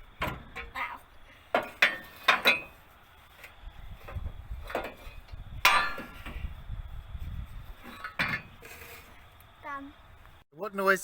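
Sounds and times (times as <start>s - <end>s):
metal exhaust pipe clanking: 0.0s - 6.6s, 7.5s - 9.2s.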